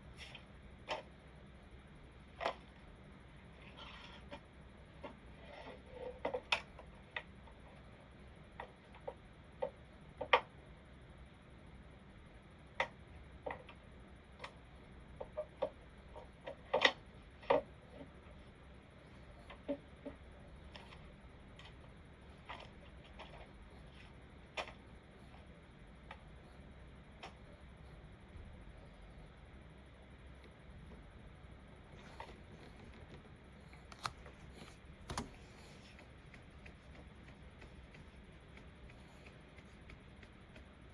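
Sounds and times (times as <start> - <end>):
keyboard keys clicking: 33.9 - 40.7.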